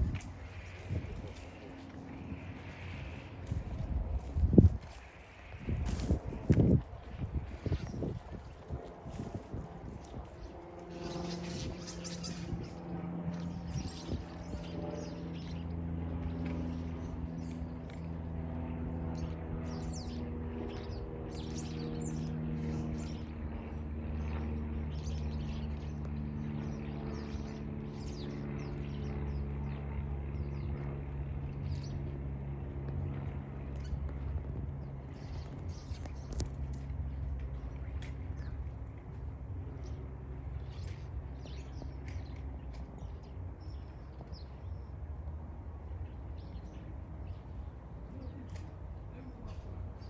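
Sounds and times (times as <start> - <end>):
steady low hum: 0.0 - 50.0
small birds chirping: 7.5 - 18.1, 33.6 - 45.0.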